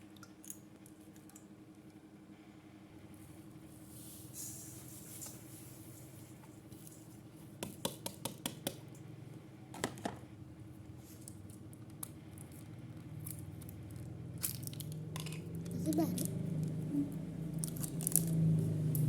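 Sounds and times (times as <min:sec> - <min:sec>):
low steady hum: 0:08.7 - 0:19.0.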